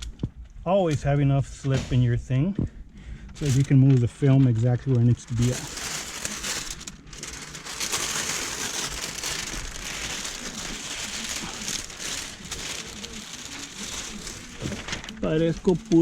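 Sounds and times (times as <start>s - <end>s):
plastic film rustling and crinkling: 3.3s - 16.0s.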